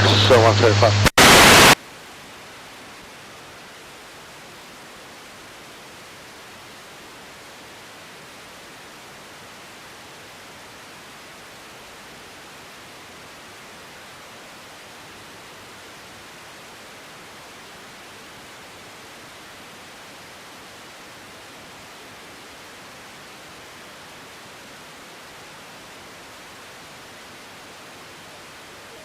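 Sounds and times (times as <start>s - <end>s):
radio static hiss: 0.0s - 2.0s, 28.1s - 29.0s.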